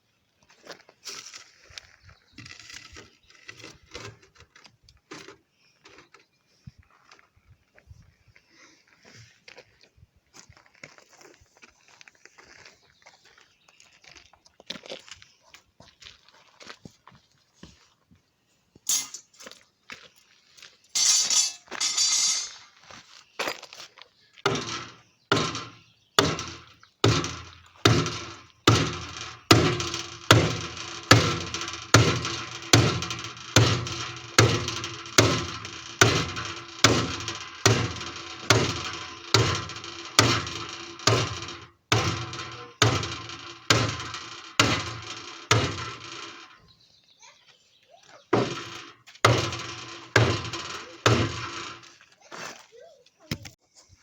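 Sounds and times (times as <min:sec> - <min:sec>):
metal scrape: 0:18.9 - 0:19.4, 0:21.0 - 0:22.7, 0:26.4 - 0:46.6.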